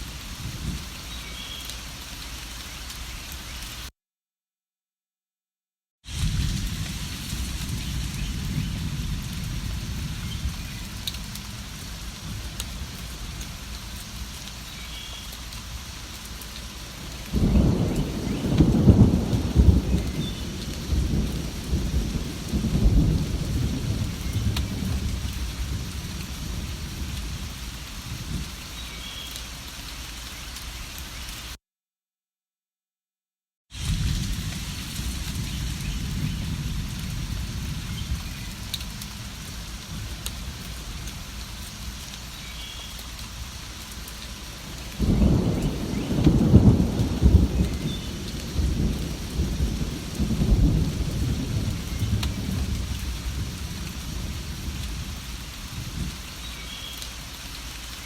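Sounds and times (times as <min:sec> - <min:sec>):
steady rain falling: 0:00.0 - 0:03.9, 0:06.1 - 0:31.6, 0:33.7 - 0:58.0
rolling thunder rumble: 0:06.1 - 0:13.7, 0:16.9 - 0:28.6, 0:33.8 - 0:42.0, 0:44.6 - 0:56.2.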